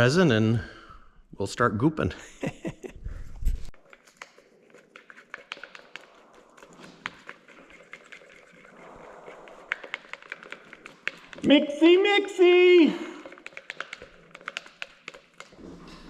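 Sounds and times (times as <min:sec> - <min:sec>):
small objects tapping and clicking: 0:03.8 - 0:07.2, 0:13.1 - 0:15.6.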